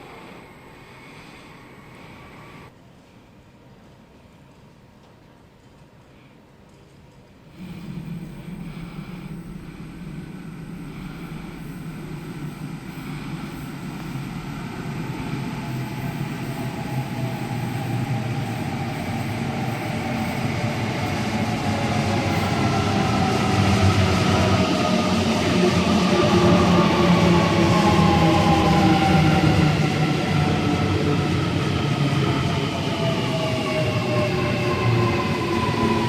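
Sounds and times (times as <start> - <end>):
train motor whine: 7.5 - 30.2
electric train approaching: 7.5 - 36.0.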